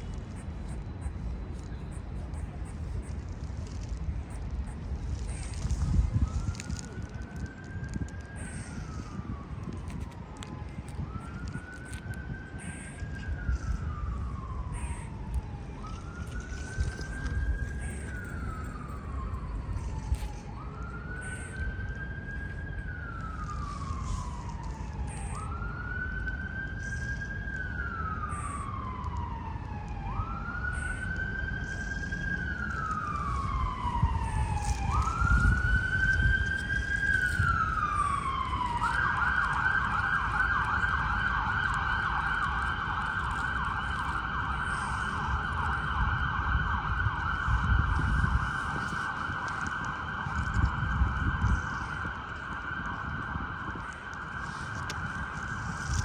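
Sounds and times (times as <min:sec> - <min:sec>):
siren wailing: 0:00.0 - 0:56.0
siren fast yelp: 0:05.1 - 0:56.0.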